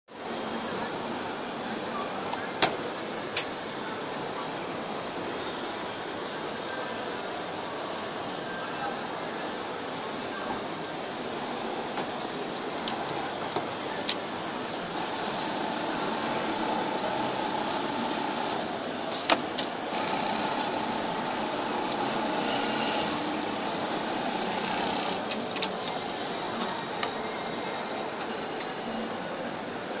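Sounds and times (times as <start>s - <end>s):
sewing machine whirring: 14.5s - 18.7s, 19.9s - 28.2s.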